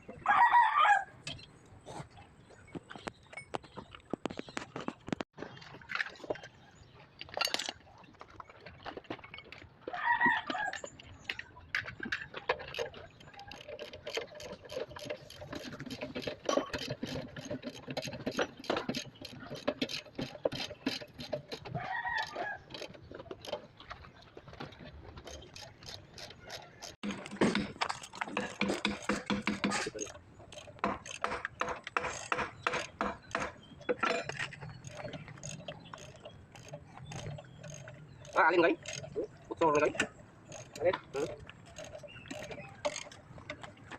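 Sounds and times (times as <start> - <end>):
rapid mechanical clicking of hand tool: 11.3 - 43.9.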